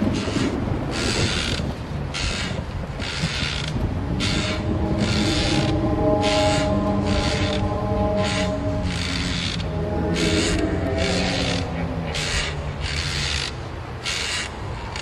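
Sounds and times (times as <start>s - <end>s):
rhythmic rasping creaking strokes: 1.1s - 15.0s
low drone with held tones: 3.7s - 13.8s.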